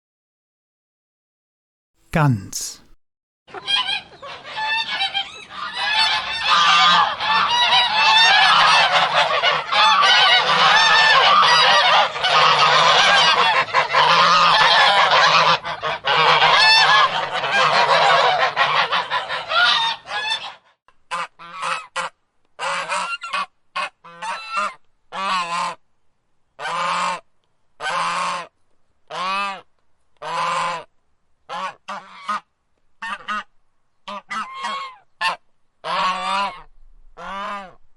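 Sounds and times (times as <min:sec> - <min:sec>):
geese honking and cackling: 0:03.6 - 0:25.8, 0:27.8 - 0:28.5, 0:29.1 - 0:29.6, 0:30.2 - 0:30.8, 0:31.5 - 0:32.4, 0:33.0 - 0:33.5, 0:34.1 - 0:37.8.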